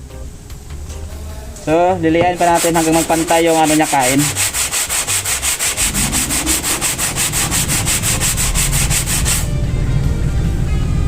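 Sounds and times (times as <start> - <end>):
brake pad rubbed on sandpaper: 2.2 - 9.5.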